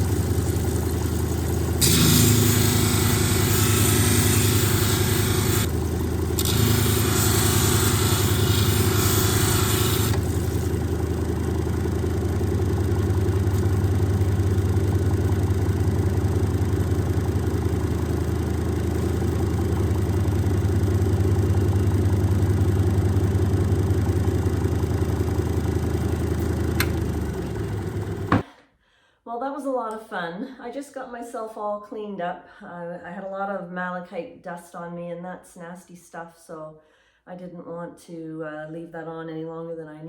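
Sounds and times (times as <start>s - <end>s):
polishing machine motor hum: 0.0s - 28.4s
loud hiss: 1.8s - 5.7s, 6.4s - 10.7s.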